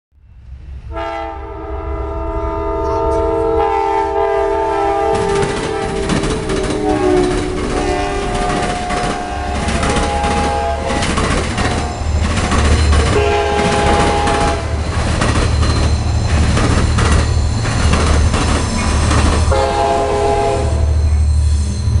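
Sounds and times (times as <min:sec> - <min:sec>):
passing train rumble and clatter: 0:00.1 - 0:22.0
locomotive air horn: 0:00.8 - 0:12.3, 0:12.9 - 0:15.0, 0:19.4 - 0:21.2.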